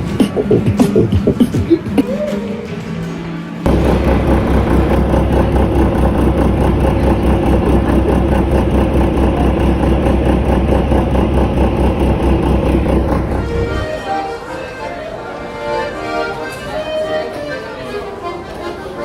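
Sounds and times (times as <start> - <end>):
vehicle engine running: 3.6 - 14.1.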